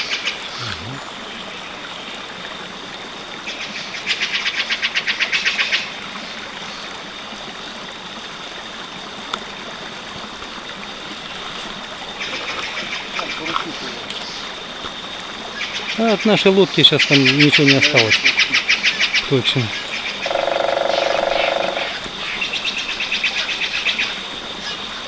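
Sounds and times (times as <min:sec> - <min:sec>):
river water flowing: 0:00.0 - 0:25.0
rapid high rattle: 0:20.2 - 0:22.0.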